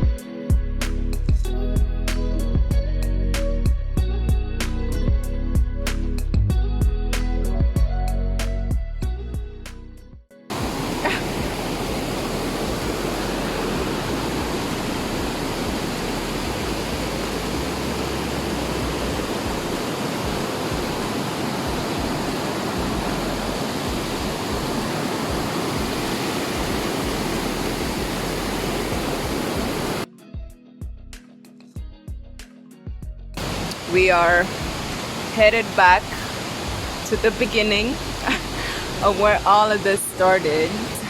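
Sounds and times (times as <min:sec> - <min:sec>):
fast-flowing river water rushing: 0:10.5 - 0:30.1, 0:33.4 - 0:41.0
guitar music: 0:30.1 - 0:34.8.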